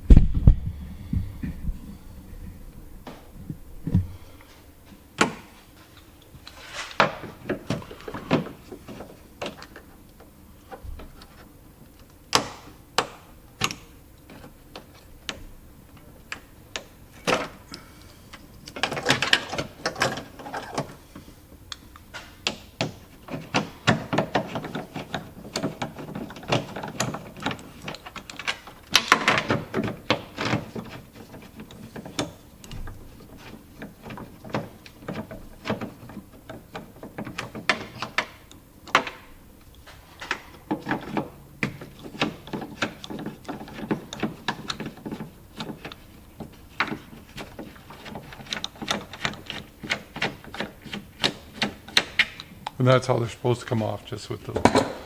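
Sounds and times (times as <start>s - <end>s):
hand tools clicking and knocking: 18.6s - 21.0s, 21.7s - 39.2s, 39.9s - 52.8s, 54.4s - 55.0s
scraping and rattling: 39.8s - 52.4s.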